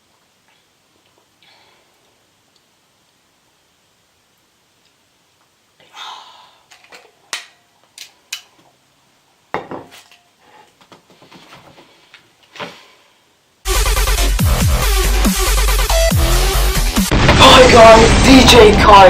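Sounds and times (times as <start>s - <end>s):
loud electronic music: 13.7s - 19.0s.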